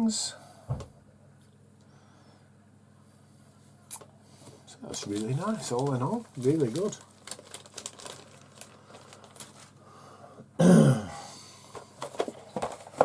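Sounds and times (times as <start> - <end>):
man clearing his throat: 10.6 - 11.4.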